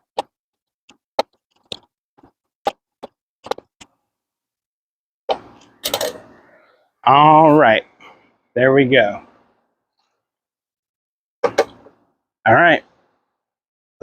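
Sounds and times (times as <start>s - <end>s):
metal tools clicking: 5.8s - 6.2s.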